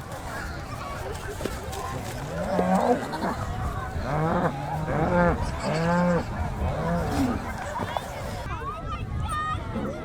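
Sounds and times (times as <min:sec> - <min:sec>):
cattle mooing: 0:04.0 - 0:07.6.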